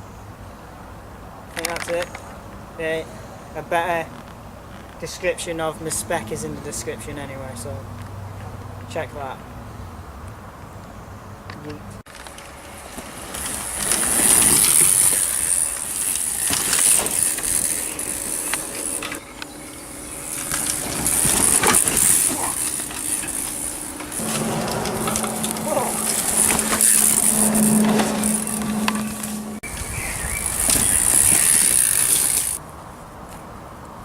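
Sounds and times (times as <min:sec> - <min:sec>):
bike knocks and rattles: 0:12.1 - 0:32.6
bike tyres rushing over dirt: 0:12.1 - 0:32.6.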